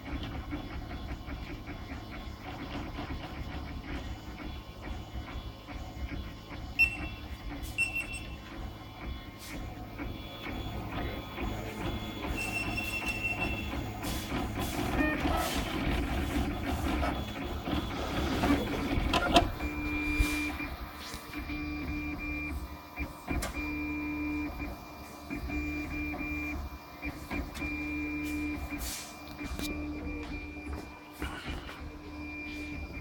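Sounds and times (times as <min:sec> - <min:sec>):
stepper motors whining: 0:05.9 - 0:28.3.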